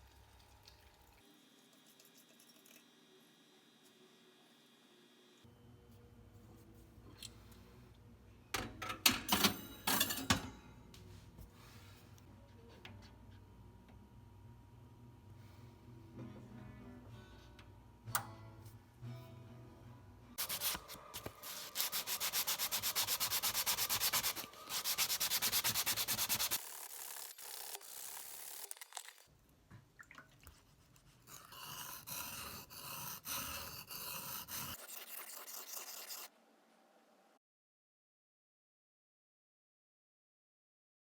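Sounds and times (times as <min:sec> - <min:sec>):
sanding a steel blade: 0:20.4 - 0:28.9, 0:31.3 - 0:36.3.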